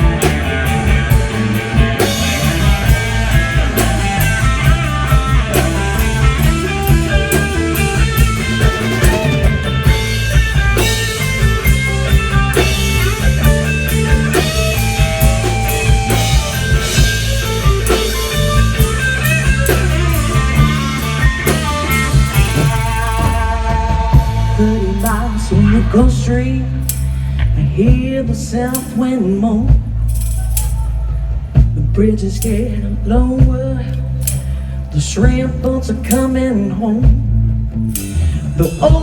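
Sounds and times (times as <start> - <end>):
drum kit beat: 0.0 - 27.2
electric guitar lead: 0.0 - 27.4
bass guitar: 0.0 - 39.0.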